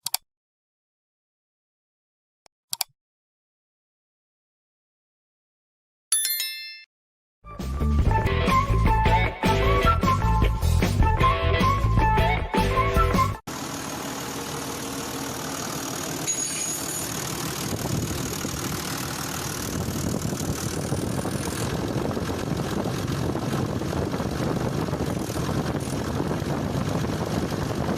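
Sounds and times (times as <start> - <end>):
diesel engine knocking clatter: 13.5 - 27.9.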